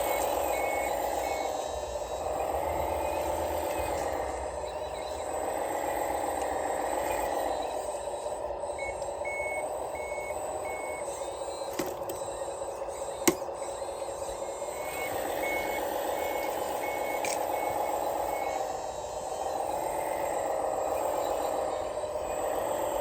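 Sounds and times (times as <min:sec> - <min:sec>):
electric drive whine: 0:00.0 - 0:23.0
reversing beeper: 0:00.0 - 0:23.0
sharp click: 0:13.3 - 0:13.5.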